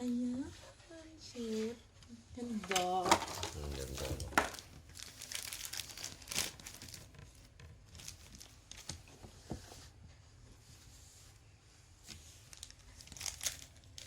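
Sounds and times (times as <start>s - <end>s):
plastic wrap crinkling: 2.6s - 9.1s, 12.0s - 14.0s.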